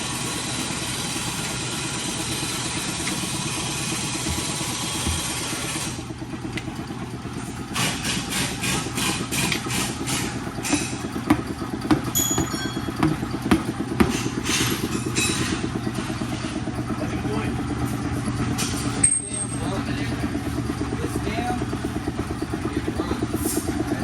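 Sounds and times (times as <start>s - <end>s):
motor running: 0.0s - 24.0s
metallic clanks: 9.9s - 16.5s.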